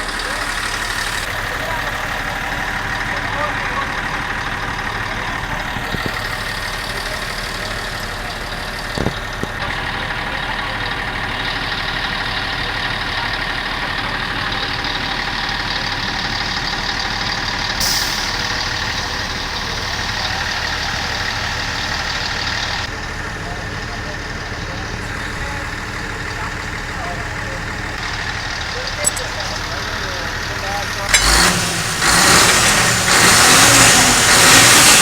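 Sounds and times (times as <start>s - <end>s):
diesel truck engine idling: 0.0s - 35.0s
short hiss: 17.8s - 18.6s.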